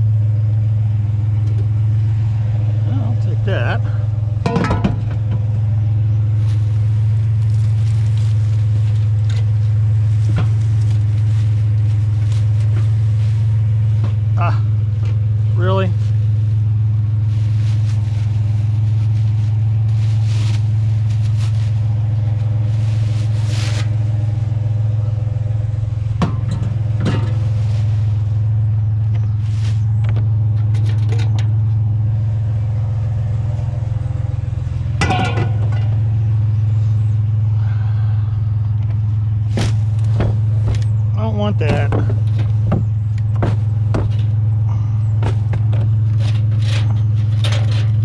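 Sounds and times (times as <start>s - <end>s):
truck engine running: 0.0s - 48.0s
knocks and clatters: 4.4s - 5.6s, 26.2s - 27.5s, 35.0s - 36.1s, 38.8s - 44.4s, 45.2s - 48.0s.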